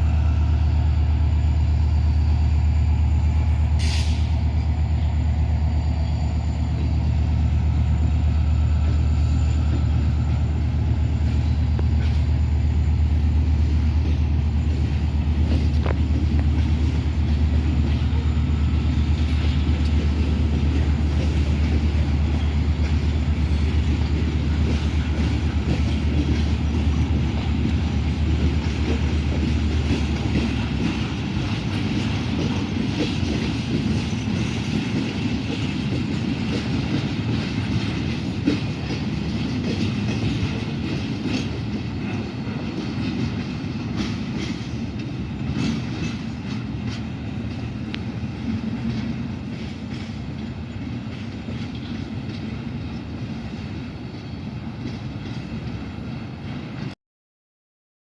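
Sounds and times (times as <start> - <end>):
diesel locomotive rumble: 0.0 - 57.0
wheels rattling on rails: 0.0 - 57.0.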